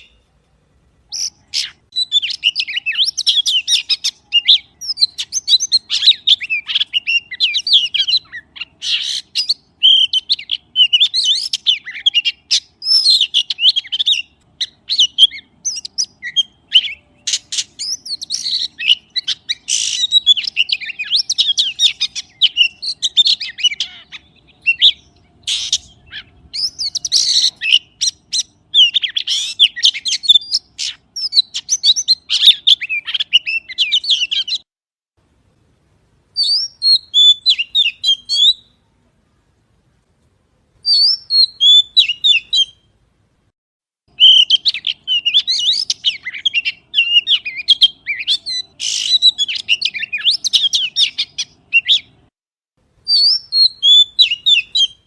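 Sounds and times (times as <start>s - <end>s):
magpie calling: 1.1s - 34.6s, 36.4s - 38.7s, 40.8s - 42.8s, 44.2s - 52.2s, 53.1s - 55.0s.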